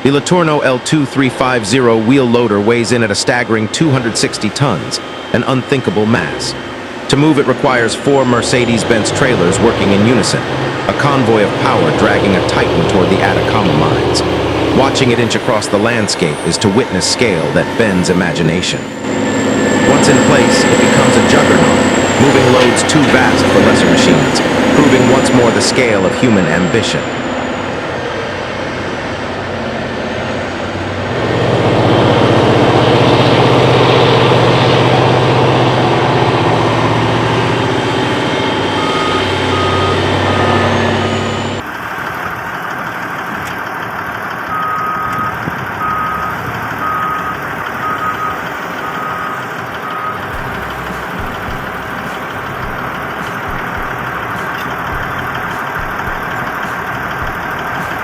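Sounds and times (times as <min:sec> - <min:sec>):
heavy machine engine running: 0:00.0 - 0:58.0
reversing alarm beeping: 0:00.4 - 0:27.8, 0:38.3 - 0:41.7, 0:44.5 - 0:58.0.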